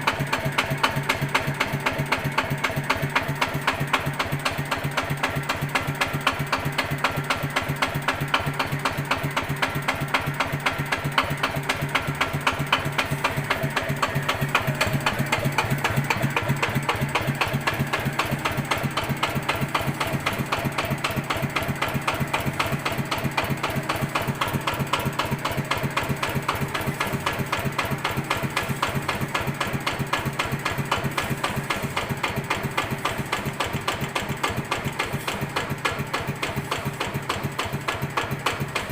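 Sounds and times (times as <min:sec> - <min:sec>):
diesel engine idling: 0:00.0 - 0:38.9
engine knocking: 0:00.0 - 0:38.9.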